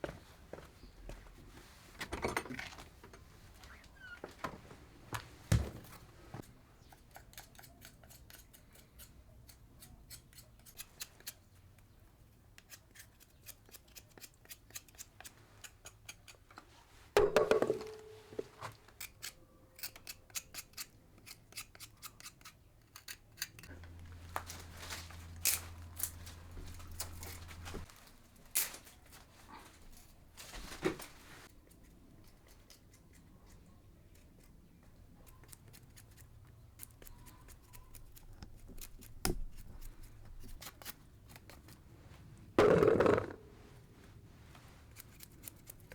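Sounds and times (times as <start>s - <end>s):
scissors snipping: 6.9s - 11.4s, 19.0s - 27.9s, 35.3s - 41.8s, 44.9s - 45.9s.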